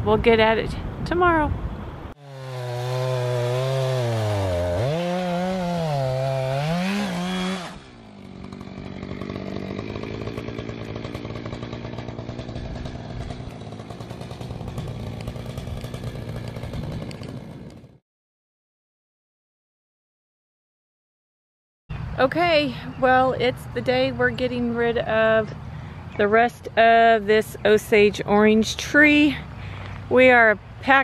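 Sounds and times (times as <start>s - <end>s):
chainsaw revving: 2.2s - 18.0s.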